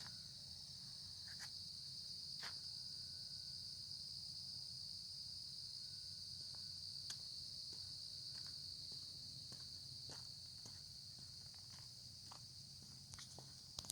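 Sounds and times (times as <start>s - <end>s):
footsteps on a lane: 6.5s - 13.9s.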